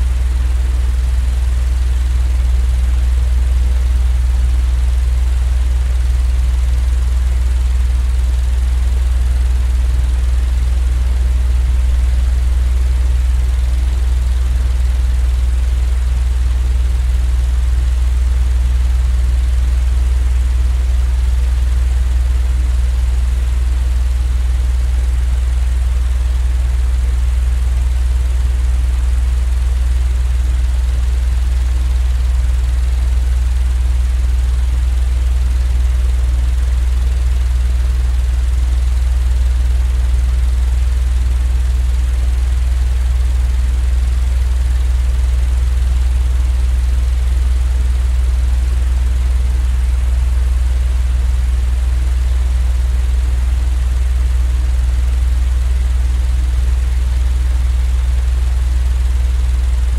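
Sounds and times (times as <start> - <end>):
low droning rumble: 0.0 - 23.6, 42.0 - 46.6, 57.6 - 59.9.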